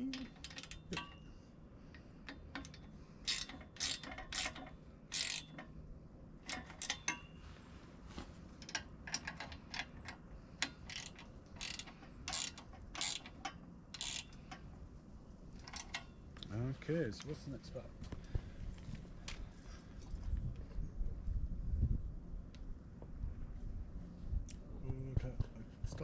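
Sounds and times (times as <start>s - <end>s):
socket ratchet clicking: 0.1s - 1.2s, 2.2s - 5.7s, 6.4s - 7.2s, 8.6s - 14.6s.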